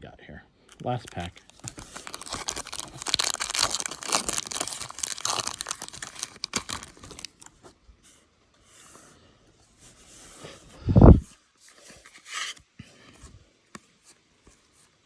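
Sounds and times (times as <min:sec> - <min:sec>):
wrapper tearing and crinkling: 0:00.7 - 0:07.6.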